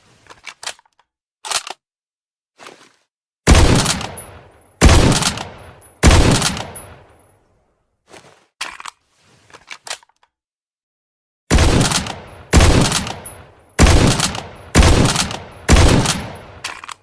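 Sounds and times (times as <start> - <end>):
sniper rifle shots echoing: 3.5 - 7.0, 11.5 - 16.6.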